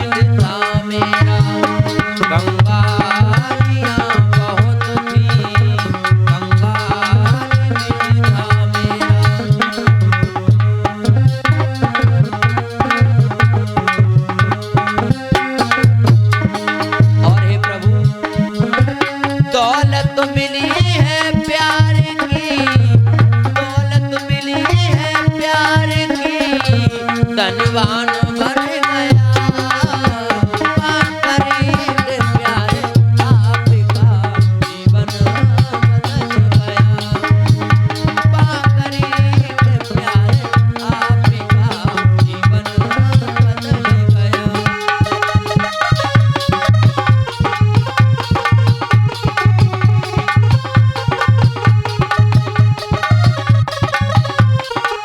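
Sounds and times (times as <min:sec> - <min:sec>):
tabla beat: 0:00.0 - 0:55.0.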